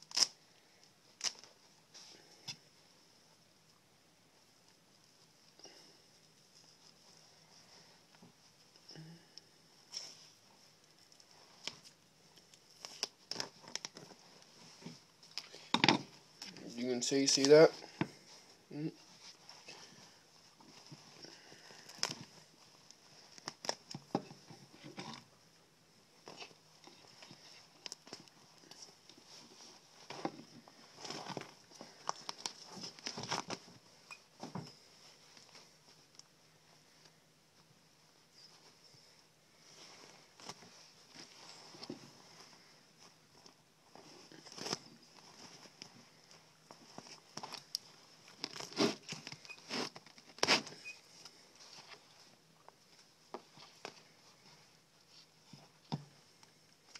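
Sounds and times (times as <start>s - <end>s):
hands plucking and tearing bird skin: 0.0s - 0.4s
soft rustles: 0.6s - 56.9s.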